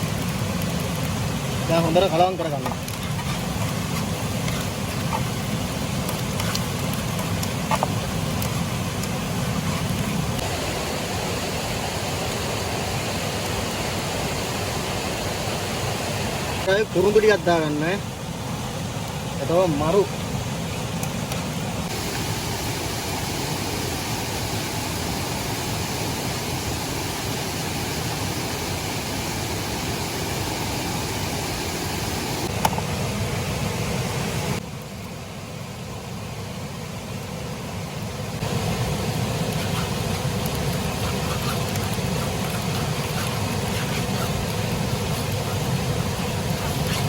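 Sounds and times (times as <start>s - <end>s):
steady rushing noise: 38.3s - 47.0s.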